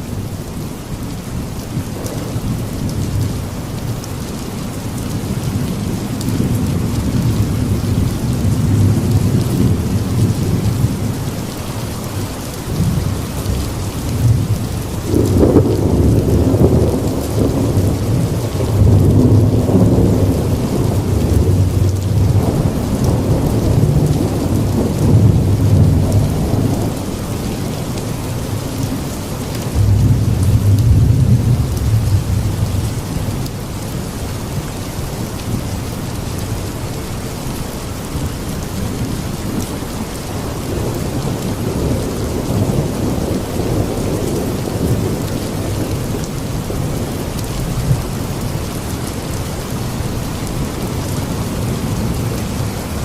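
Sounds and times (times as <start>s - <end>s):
heavy rain: 0.0s - 53.0s
rolling thunder: 5.0s - 11.3s, 12.7s - 33.5s.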